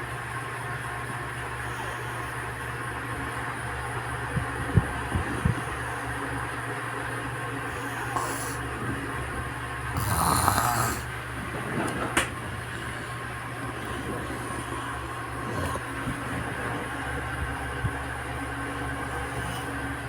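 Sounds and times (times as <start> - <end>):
steady low hum: 0.0 - 20.0
baby snoring: 7.6 - 9.0, 9.9 - 11.3, 12.4 - 17.4, 19.0 - 20.0.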